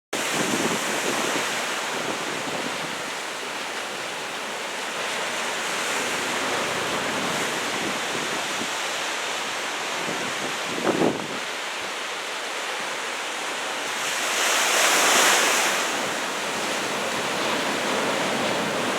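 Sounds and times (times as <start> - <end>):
ocean surf breaking: 0.2 - 8.3, 13.5 - 18.9
wind buffeting microphone: 15.9 - 18.9.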